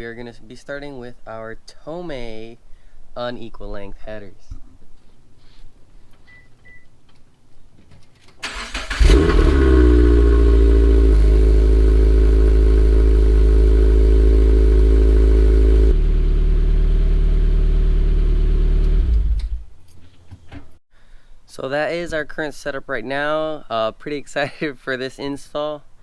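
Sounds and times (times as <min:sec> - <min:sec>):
car engine starting and idling: 0:08.4 - 0:19.7.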